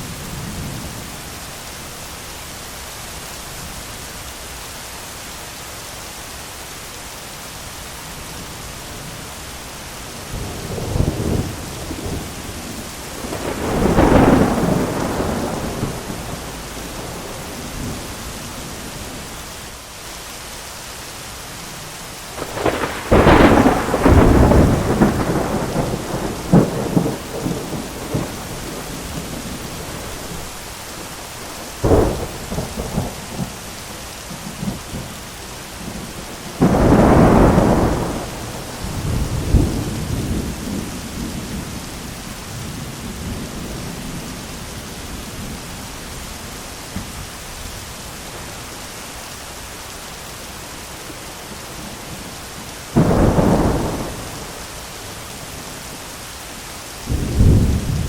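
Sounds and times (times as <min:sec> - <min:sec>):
heavy rain: 0:00.0 - 0:58.0
thunder cracks and rumbles: 0:10.3 - 0:18.1, 0:22.4 - 0:30.5, 0:35.8 - 0:41.8, 0:52.9 - 0:54.6, 0:57.1 - 0:58.0.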